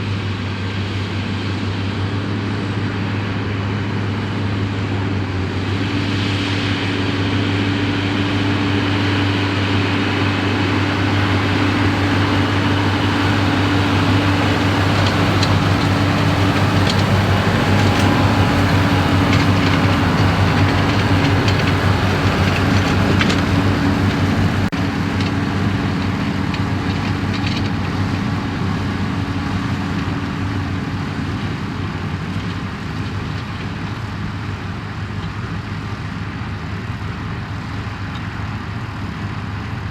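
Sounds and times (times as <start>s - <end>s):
tractor diesel engine under load: 0.0s - 39.9s
machinery ticking and clatter: 8.3s - 36.2s.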